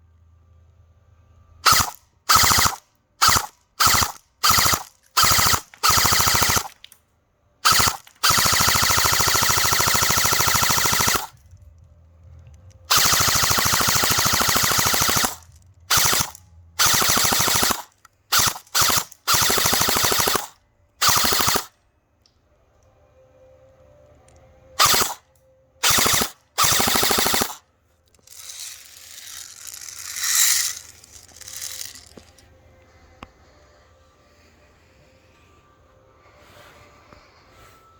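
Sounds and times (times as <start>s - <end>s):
airsoft rifle full-auto bursts: 1.6s - 6.8s, 7.6s - 11.4s, 12.9s - 21.7s, 24.8s - 25.2s, 25.8s - 27.6s, 28.3s - 32.1s
soft uneven noise: 27.7s - 37.9s.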